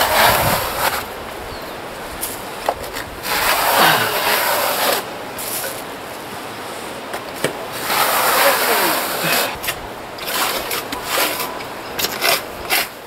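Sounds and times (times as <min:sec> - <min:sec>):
trowel scraping plaster: 0:00.0 - 0:01.1, 0:03.2 - 0:05.8, 0:07.7 - 0:13.0.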